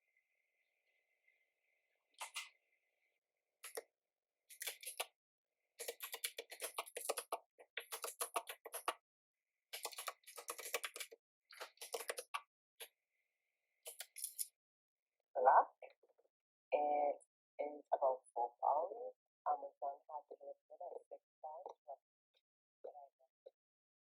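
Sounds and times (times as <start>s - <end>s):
mechanical keyboard typing: 5.8s - 9.0s, 9.8s - 12.4s.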